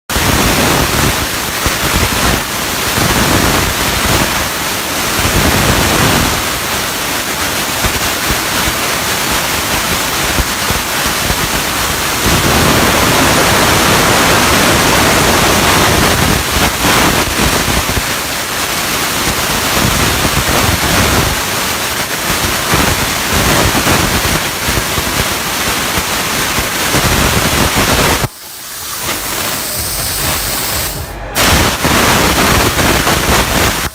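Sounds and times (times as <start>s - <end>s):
plasma torch hissing: 8.8s - 33.9s.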